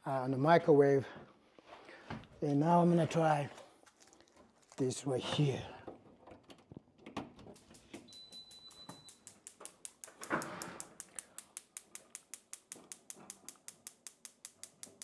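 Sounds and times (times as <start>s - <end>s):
gas stove igniter clicking: 7.6s - 15.0s
short high beep: 8.1s - 9.2s.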